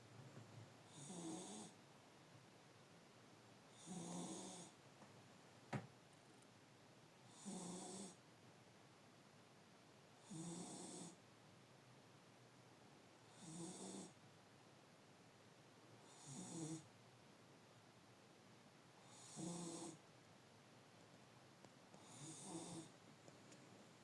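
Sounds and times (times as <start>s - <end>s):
pet snoring: 0.9s - 1.8s, 3.7s - 4.8s, 7.3s - 8.2s, 10.2s - 11.2s, 13.3s - 14.2s, 16.0s - 16.9s, 19.0s - 20.0s, 22.0s - 22.9s.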